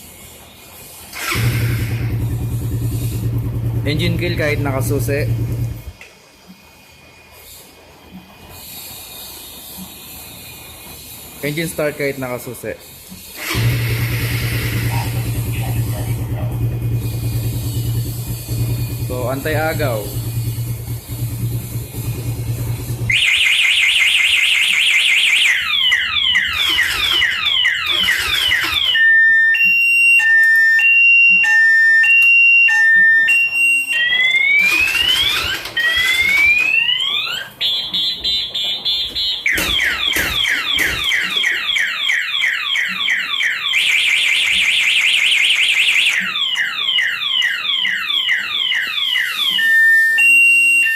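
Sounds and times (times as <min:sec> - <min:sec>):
motorcycle alarm siren: 0:00.7 - 0:06.0, 0:09.3 - 0:50.9
motorcycle engine idling: 0:01.3 - 0:05.9, 0:13.6 - 0:23.2.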